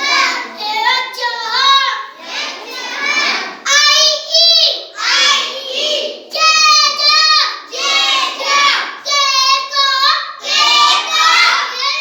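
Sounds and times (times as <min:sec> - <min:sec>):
child chanting in sing-song: 0:00.0 - 0:12.0.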